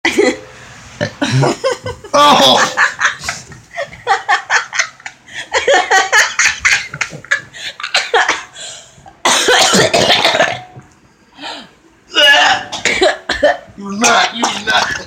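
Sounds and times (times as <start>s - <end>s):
person laughing: 1.2s - 8.5s
person coughing: 9.3s - 10.8s, 12.2s - 14.8s.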